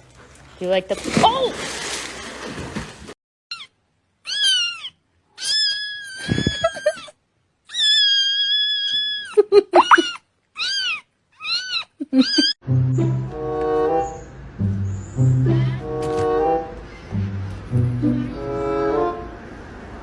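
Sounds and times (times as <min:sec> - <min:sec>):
cat meowing: 0:09.9 - 0:12.5.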